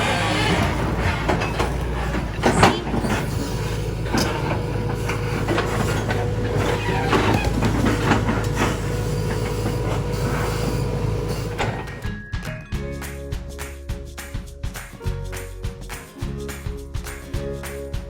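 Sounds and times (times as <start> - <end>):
rocks knocking and clanking: 0.0 - 12.0
backhoe engine running: 0.0 - 12.1.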